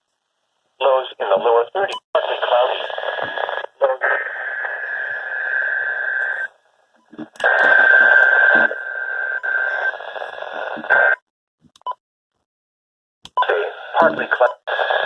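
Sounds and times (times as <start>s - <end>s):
radio static hiss: 0.8s - 11.2s, 13.4s - 15.0s.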